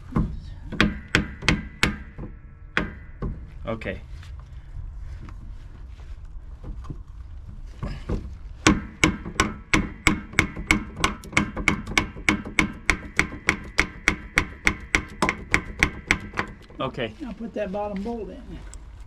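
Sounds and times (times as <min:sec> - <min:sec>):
rapid hammer strikes on metal: 0:00.7 - 0:03.4, 0:08.6 - 0:16.7.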